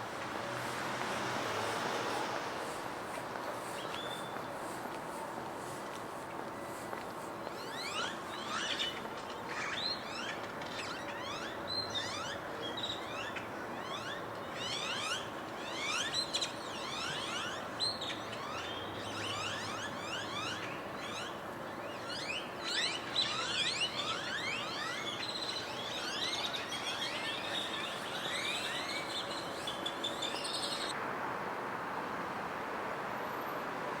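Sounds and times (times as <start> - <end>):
flock of birds chirping: 7.5 - 31.0.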